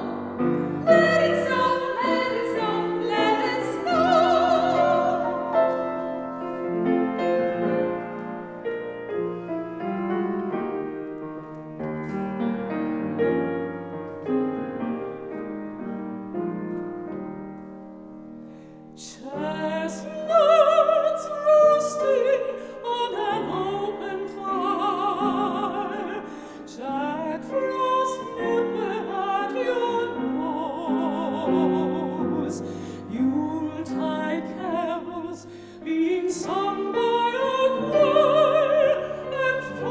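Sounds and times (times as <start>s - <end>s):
women singing operatically: 0.0s - 5.8s, 19.0s - 39.9s
piano chords: 0.0s - 39.9s.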